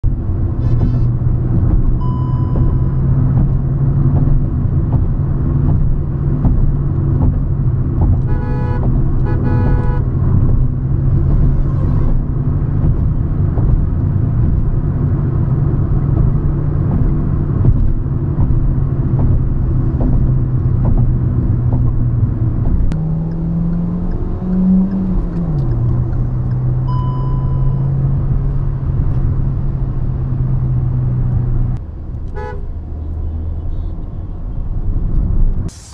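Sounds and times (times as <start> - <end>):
car engine running: 0.0 - 31.8
vehicle horns honking: 0.6 - 1.2, 8.2 - 10.3, 11.3 - 12.2, 32.3 - 34.4
short electronic beep: 2.0 - 3.0, 26.9 - 27.9.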